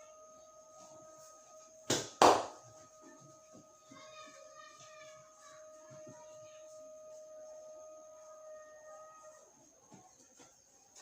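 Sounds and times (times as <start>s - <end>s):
faint distant voices: 0.0s - 11.0s
high constant hum: 0.0s - 11.0s.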